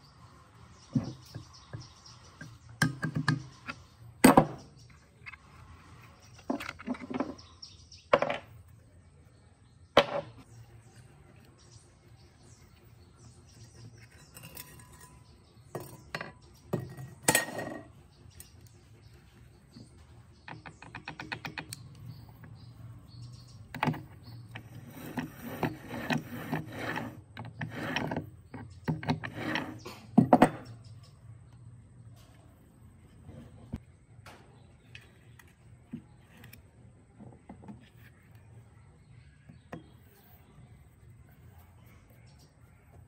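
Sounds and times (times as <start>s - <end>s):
metal tools clinking and scraping: 13.7s - 18.0s.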